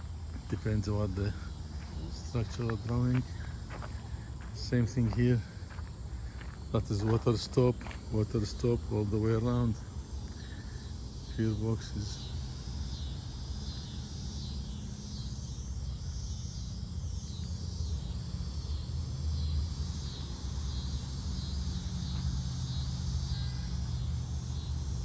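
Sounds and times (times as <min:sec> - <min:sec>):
distant engine rumble: 0:00.0 - 0:12.2
insects chirping: 0:00.0 - 0:25.0.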